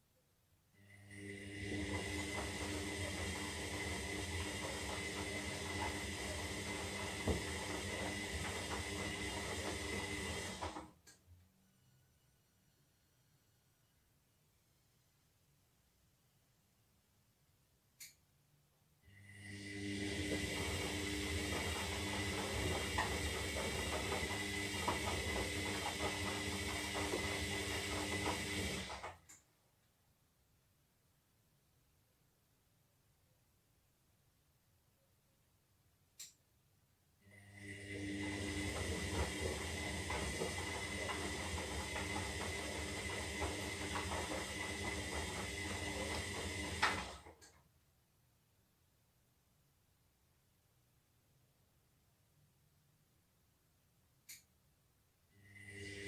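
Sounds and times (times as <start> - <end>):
washing machine water hissing: 1.3 - 10.8, 19.6 - 29.1, 37.7 - 47.3, 55.5 - 56.0
washing machine knock: 4.4 - 10.7.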